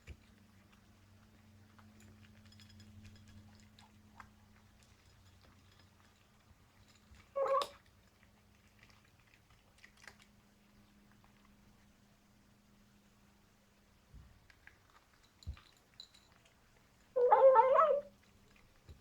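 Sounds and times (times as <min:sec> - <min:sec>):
kitten chewing clicks: 0:00.1 - 0:12.0
cat vocal noise: 0:07.4 - 0:07.8, 0:17.2 - 0:18.1.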